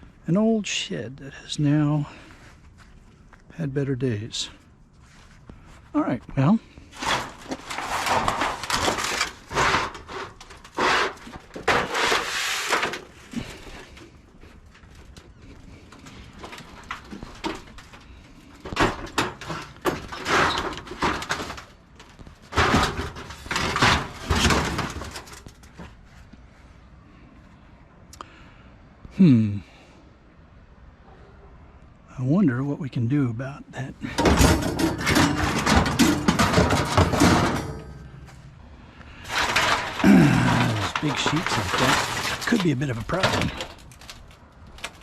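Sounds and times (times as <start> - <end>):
sheet metal rattling and banging: 7.0 - 14.0, 15.0 - 25.8, 34.0 - 38.5, 39.2 - 45.0.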